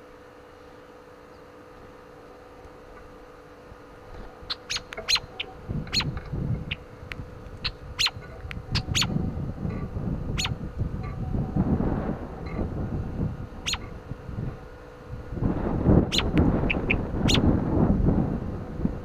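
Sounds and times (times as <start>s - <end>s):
wind rumbling on microphone: 3.9s - 19.0s
bird chip calls: 4.1s - 11.2s, 13.6s - 14.0s, 16.1s - 17.5s.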